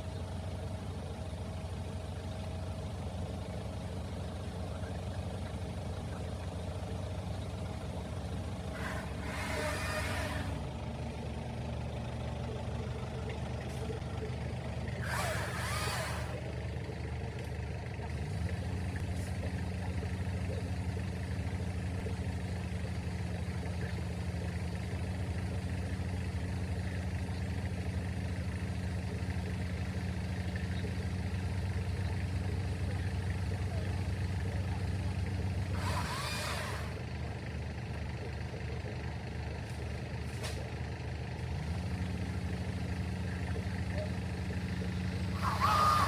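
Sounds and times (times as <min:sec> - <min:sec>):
heavy diesel engine running: 0:00.0 - 0:46.0.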